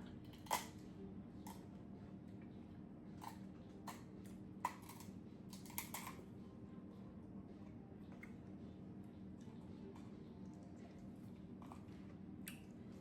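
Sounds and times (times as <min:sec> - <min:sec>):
chewing clicks and smacks: 0:11.6 - 0:12.8.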